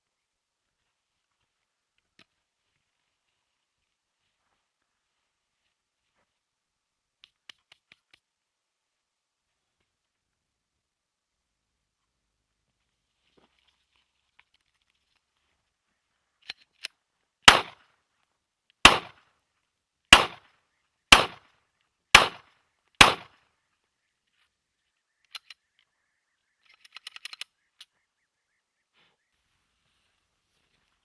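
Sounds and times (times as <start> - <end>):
faint gun clicks: 7.2 - 8.3, 25.0 - 28.0
pistol shots: 17.5 - 17.8, 18.8 - 19.2, 20.1 - 20.5, 21.1 - 21.5, 22.2 - 23.4.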